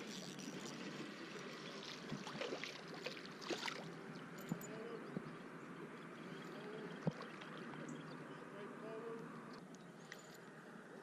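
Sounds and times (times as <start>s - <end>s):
water trickling and splashing: 0.0s - 4.6s, 6.9s - 8.1s.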